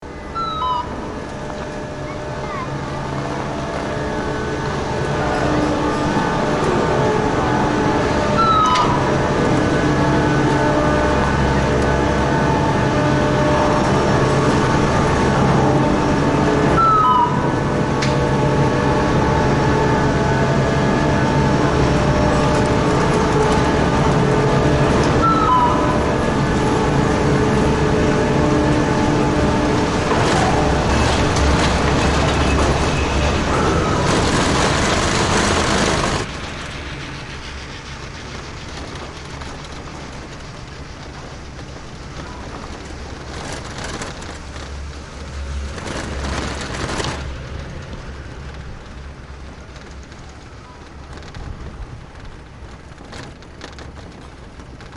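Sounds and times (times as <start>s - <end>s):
machinery squeals: 0.0s - 44.3s
chairlift machinery hum: 0.0s - 54.9s.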